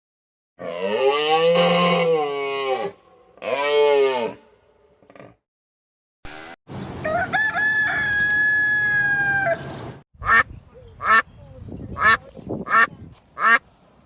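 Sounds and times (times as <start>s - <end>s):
rooster crowing: 7.0s - 9.7s
duck quacking: 10.2s - 11.3s, 12.0s - 13.6s.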